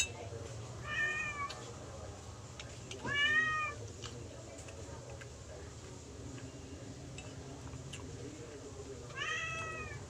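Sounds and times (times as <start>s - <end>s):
cat meowing: 0.8s - 1.6s, 3.0s - 3.8s, 9.1s - 10.0s.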